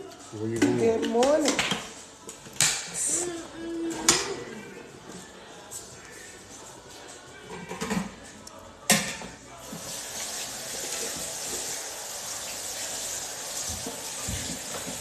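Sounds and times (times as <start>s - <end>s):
water running from a tap: 9.6s - 15.0s.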